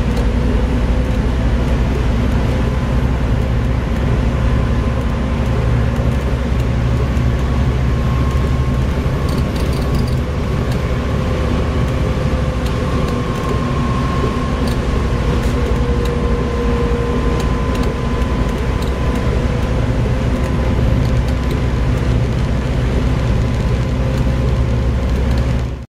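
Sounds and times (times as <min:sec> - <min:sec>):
bus engine droning: 0:00.0 - 0:25.9
light clicks and rattles: 0:08.3 - 0:10.9.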